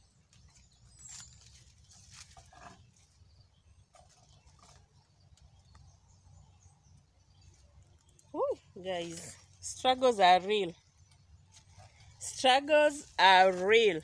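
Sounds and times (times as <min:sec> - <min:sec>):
faint rustles and clicks: 0:00.2 - 0:03.2, 0:03.8 - 0:06.2.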